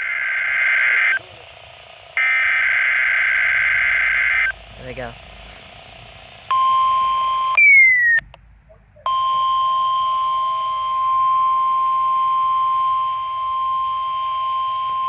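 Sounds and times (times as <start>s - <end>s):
steady alarm beep: 0.0s - 1.2s, 2.2s - 4.6s, 6.5s - 8.2s, 9.1s - 15.0s.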